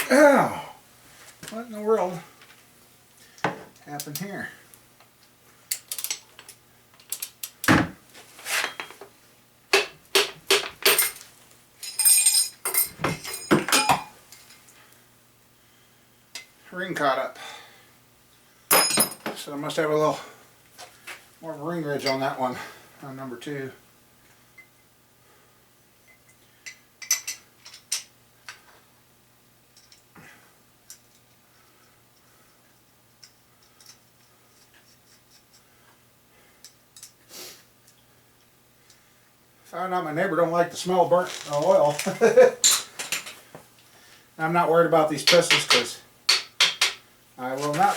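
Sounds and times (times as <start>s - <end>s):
faint steady hum: 0.0s - 47.9s
metal tools clinking on engine parts: 10.8s - 11.2s, 11.8s - 14.1s, 18.7s - 19.4s, 26.1s - 28.1s, 42.0s - 43.4s
ringing metal clang: 12.0s - 14.1s.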